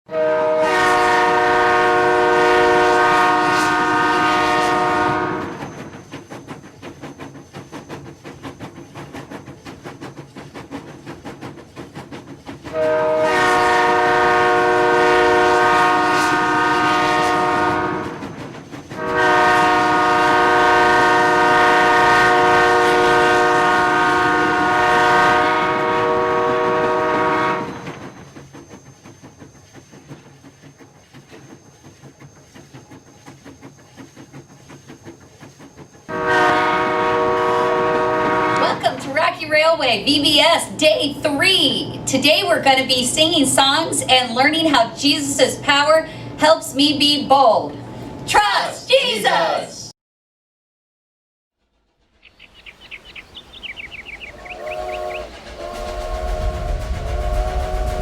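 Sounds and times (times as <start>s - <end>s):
train horn blasts: 0.1s - 5.7s, 12.7s - 28.1s, 36.1s - 39.0s, 53.4s - 58.0s.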